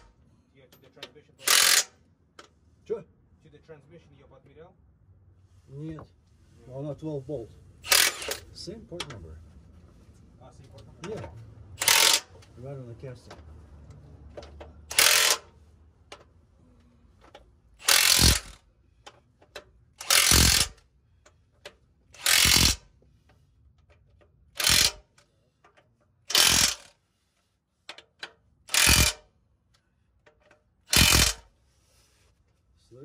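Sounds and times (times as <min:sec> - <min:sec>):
impact wrench bursts: 0:01.4 - 0:02.0, 0:07.8 - 0:08.5, 0:11.8 - 0:12.4, 0:14.9 - 0:15.6, 0:17.8 - 0:18.7, 0:19.9 - 0:20.9, 0:22.1 - 0:23.3, 0:24.5 - 0:25.2, 0:26.3 - 0:27.0, 0:28.0 - 0:29.3, 0:30.4 - 0:31.5.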